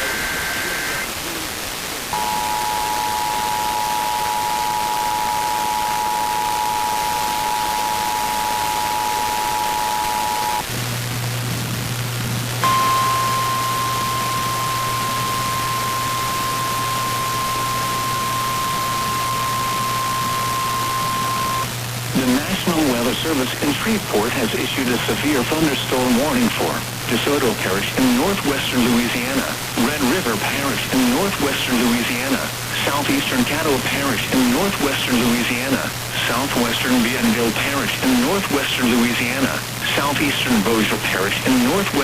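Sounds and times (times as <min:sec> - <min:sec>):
constant hiss: 0:00.0 - 0:42.0
steady warning alarm tone: 0:02.2 - 0:10.6, 0:12.6 - 0:21.7
two-tone attention signal: 0:02.2 - 0:10.6, 0:12.6 - 0:21.7
low hum: 0:02.2 - 0:23.4.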